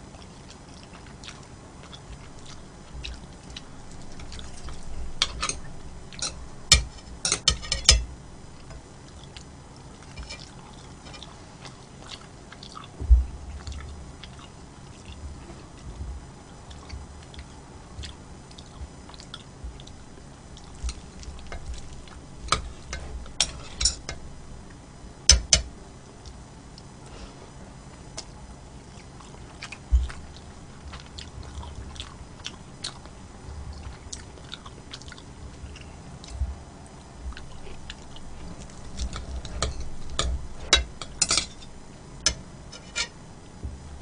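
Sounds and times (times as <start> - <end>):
person chewing food: 0.0 - 27.0, 27.9 - 43.2
low thump: 13.0 - 13.4.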